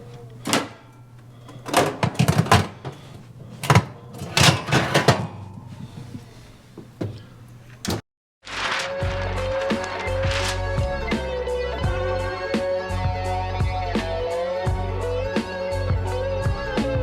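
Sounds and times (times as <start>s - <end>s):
steady low hum: 0.0s - 8.0s.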